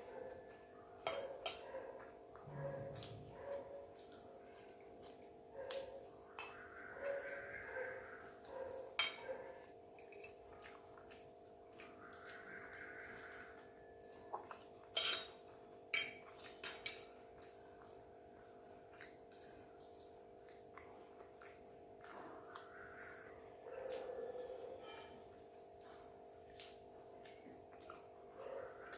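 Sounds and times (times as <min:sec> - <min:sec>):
utensil clinking against dish: 0:01.0 - 0:01.7, 0:09.0 - 0:09.4, 0:14.9 - 0:17.1
chewing and mouth sounds: 0:01.3 - 0:28.9.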